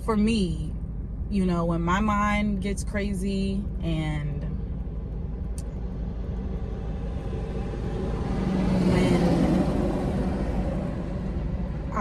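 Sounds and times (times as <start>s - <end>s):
steady low rumble: 0.0s - 12.0s
motor vehicle passing by: 4.6s - 12.0s.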